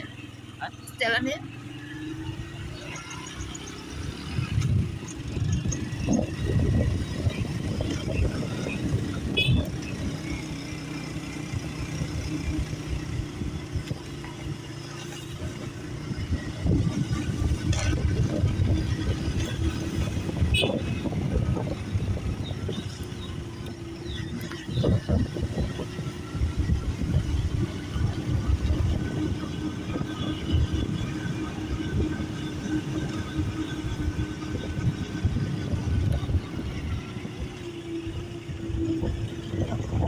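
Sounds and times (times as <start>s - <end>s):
vehicle engine running: 0.0s - 40.0s.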